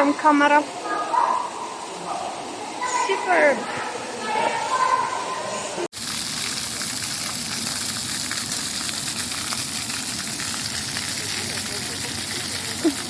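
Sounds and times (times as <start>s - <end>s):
voices: 0.0s - 5.9s, 11.0s - 13.0s
water spraying hiss: 6.0s - 13.0s.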